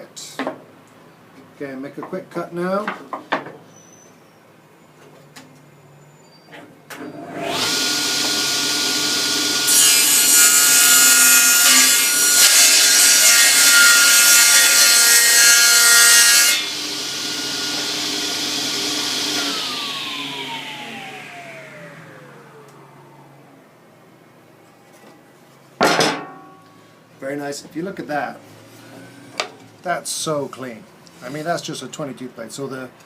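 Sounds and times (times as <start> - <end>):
table saw motor whine: 7.1 - 14.3, 15.0 - 23.6
saw blade cutting wood: 7.4 - 21.3.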